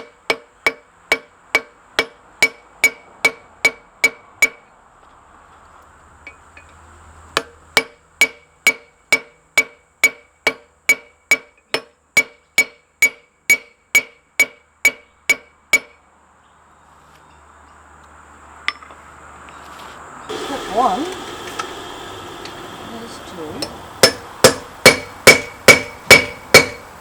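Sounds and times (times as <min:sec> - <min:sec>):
hammer striking steel on anvil: 0:00.0 - 0:04.7, 0:07.4 - 0:16.0, 0:23.6 - 0:27.0.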